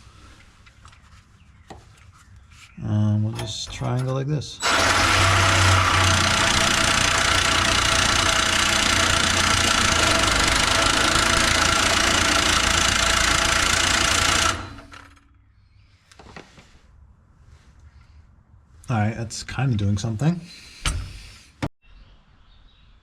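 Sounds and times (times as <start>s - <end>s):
reciprocating saw cutting steel: 4.6s - 15.2s.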